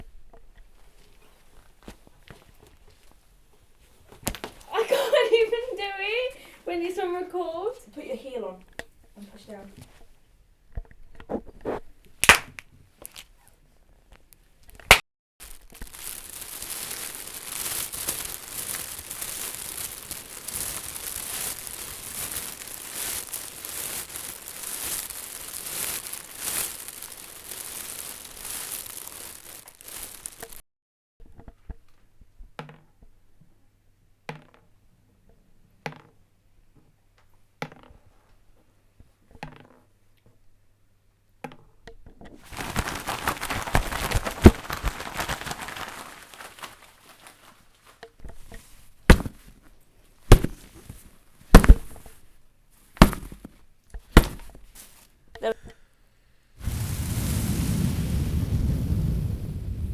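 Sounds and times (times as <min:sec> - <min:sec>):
something crushed and crackling: 0:11.3 - 0:13.3, 0:14.7 - 0:30.6, 0:42.4 - 0:49.6, 0:50.2 - 0:52.1, 0:53.0 - 0:54.7
sharp snaps: 0:11.6 - 0:13.2.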